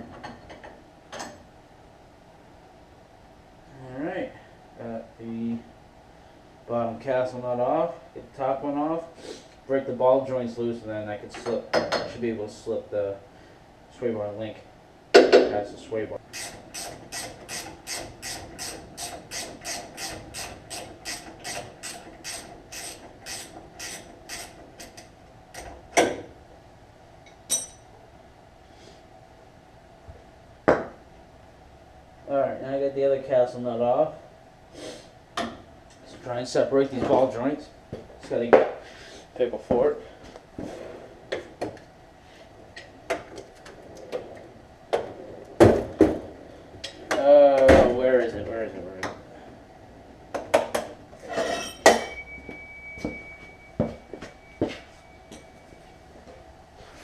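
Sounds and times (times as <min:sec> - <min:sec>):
hand ratchet clicking: 0:16.4 - 0:25.0
sharp metal clanks: 0:27.3 - 0:27.9, 0:51.3 - 0:52.6.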